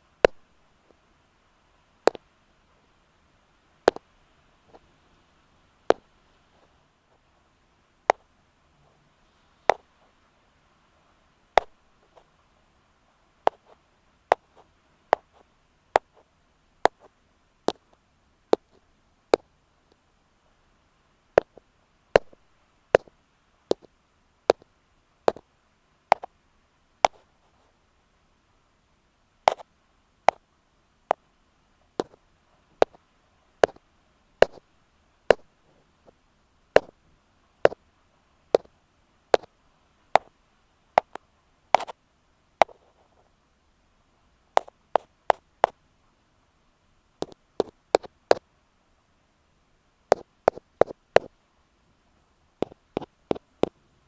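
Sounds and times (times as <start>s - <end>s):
ear pick tapping on microphone: 0.2s - 0.5s, 11.6s - 12.3s, 13.5s - 15.4s, 22.2s - 22.4s, 27.0s - 27.2s, 32.8s - 33.0s, 34.4s - 34.6s, 36.8s - 37.0s, 38.5s - 38.7s, 39.3s - 39.5s, 41.0s - 41.2s, 44.6s - 45.8s, 47.2s - 48.4s, 50.1s - 51.3s, 52.6s - 53.8s.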